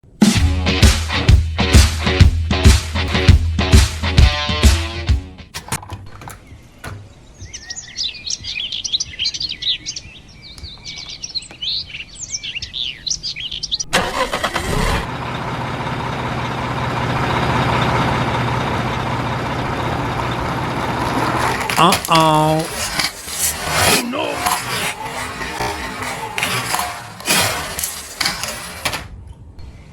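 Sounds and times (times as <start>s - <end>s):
birds chirping: 5.9s - 14.0s
vehicle engine running: 14.6s - 22.1s.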